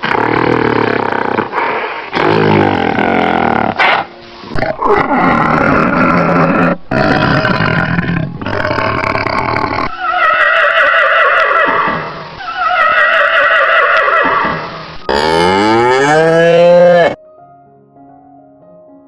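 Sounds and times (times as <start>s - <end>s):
rough growling animal call: 0.0s - 13.4s, 14.0s - 17.2s
long drawn-out animal calls: 4.6s - 17.2s
cow mooing: 15.1s - 17.2s.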